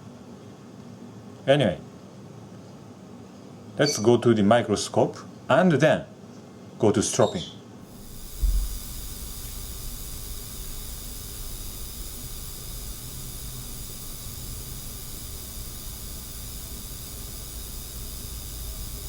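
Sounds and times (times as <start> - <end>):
faint high whining tones: 7.9 - 19.0
steady hiss: 7.9 - 19.0.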